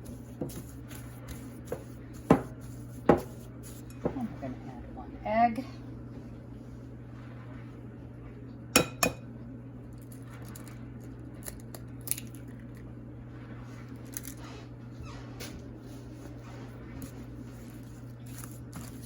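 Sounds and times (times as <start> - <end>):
steady low hum: 0.0 - 19.0
utensil clinking against bowl: 8.8 - 9.3.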